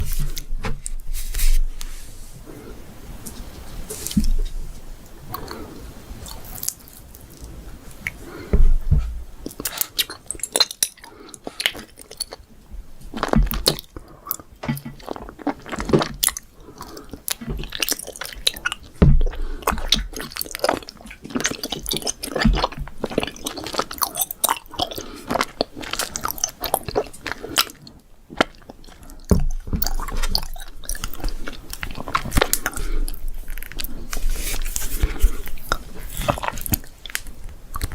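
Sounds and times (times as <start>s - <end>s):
chewing crunchy candy: 9.4s - 37.9s.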